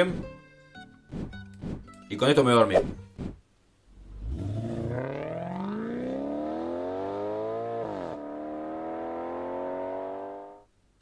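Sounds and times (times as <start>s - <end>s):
car engine accelerating: 3.9s - 10.6s.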